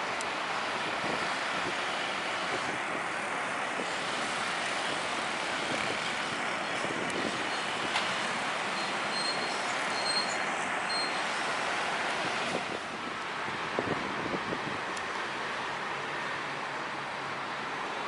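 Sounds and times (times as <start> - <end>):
airliner engines rushing: 0.0 - 18.0.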